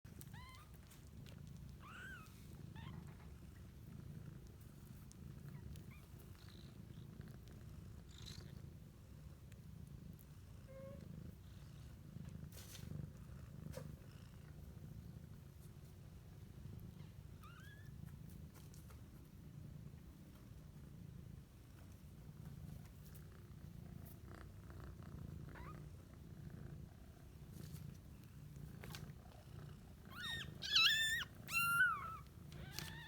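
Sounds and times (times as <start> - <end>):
cat purring: 0.1 - 33.0
kittens squeaking: 1.8 - 3.0, 30.1 - 33.0.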